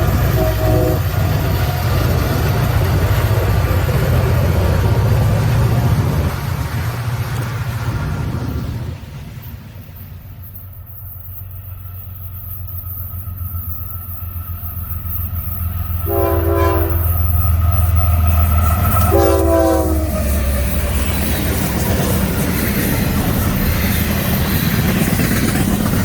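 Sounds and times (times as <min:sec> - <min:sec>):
locomotive air horn blasts: 0:00.0 - 0:01.2, 0:16.0 - 0:17.4, 0:19.0 - 0:20.3
diesel locomotive engine rumble: 0:00.0 - 0:26.0.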